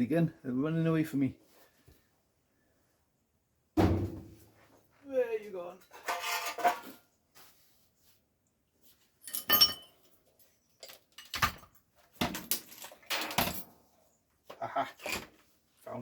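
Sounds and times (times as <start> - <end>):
metal hand tools clattering: 9.2 - 10.0
ringing metal clank: 9.3 - 9.9.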